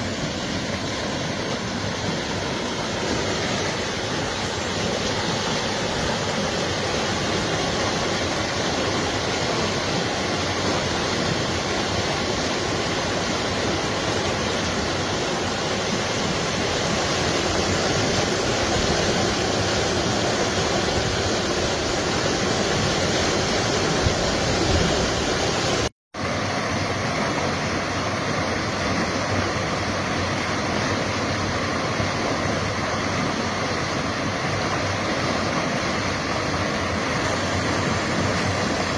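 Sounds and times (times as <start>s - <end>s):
river water rushing: 0.0s - 38.9s.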